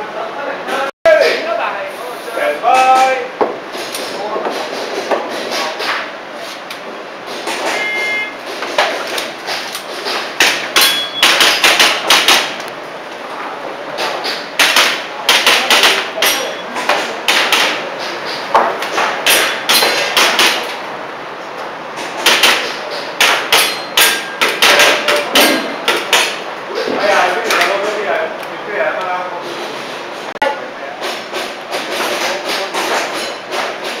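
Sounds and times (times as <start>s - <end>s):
short beep: 7.7s - 8.4s, 10.9s - 11.2s.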